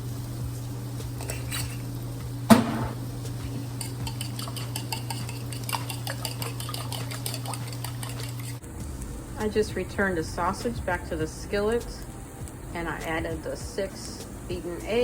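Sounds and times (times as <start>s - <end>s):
utensil clicking against bowl: 3.7s - 8.6s
low hum: 8.6s - 15.0s.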